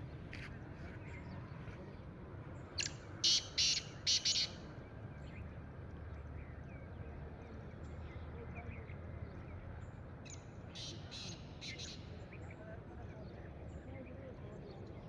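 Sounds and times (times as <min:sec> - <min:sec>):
faint chirping of small birds: 0:00.0 - 0:15.0
francolin calling: 0:02.8 - 0:04.6.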